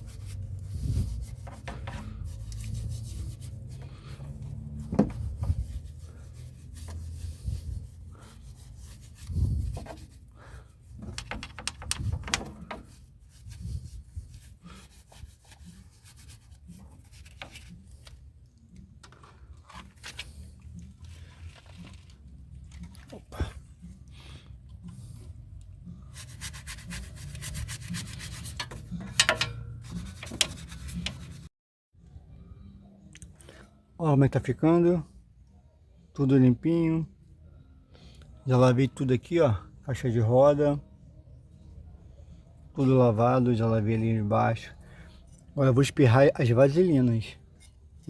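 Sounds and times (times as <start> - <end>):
hand scrubbing metal: 0.0 - 17.9, 26.1 - 31.5.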